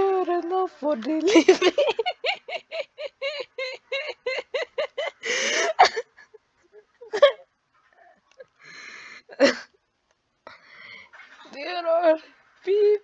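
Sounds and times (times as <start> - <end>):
person laughing: 1.3 - 7.4
wheezy breath: 5.1 - 5.8, 8.0 - 9.4, 10.5 - 11.2
breathy hiss: 5.1 - 5.9, 8.6 - 9.4.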